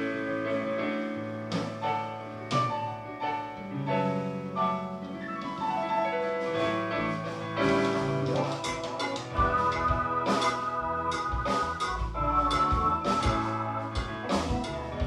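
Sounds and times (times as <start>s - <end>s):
keyboard chords: 0.0s - 15.0s
rock band playing: 0.0s - 15.0s
deep bass notes: 6.7s - 15.0s.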